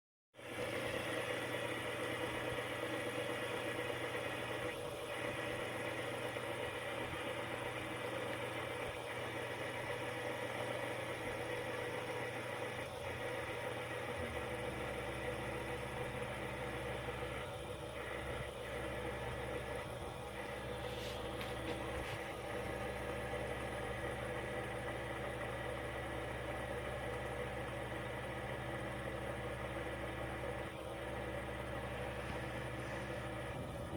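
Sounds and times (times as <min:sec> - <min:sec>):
fidget spinner whirring: 0:00.5 - 0:25.9, 0:29.8 - 0:33.9
deep low hum: 0:31.6 - 0:33.9.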